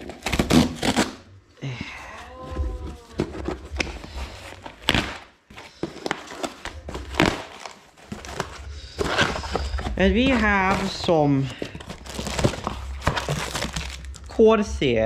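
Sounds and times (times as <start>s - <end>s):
cardboard box rustling: 1.9s - 14.3s
plastic bag crinkling: 3.1s - 14.3s.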